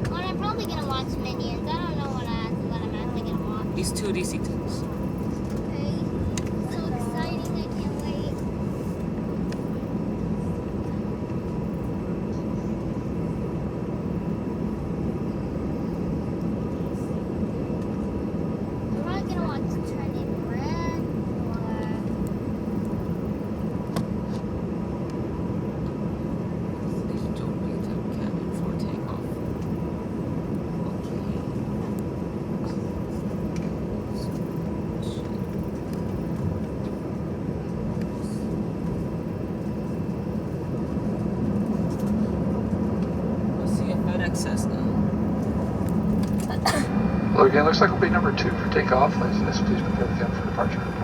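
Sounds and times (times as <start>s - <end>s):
aircraft engines idling rumble: 0.0s - 51.0s
faint steady whine: 26.9s - 51.0s.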